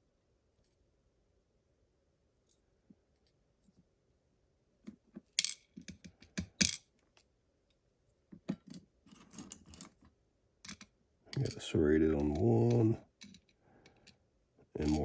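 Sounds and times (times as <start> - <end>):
small metal lock parts clinking: 8.4 - 10.0, 10.6 - 14.2, 14.8 - 15.0.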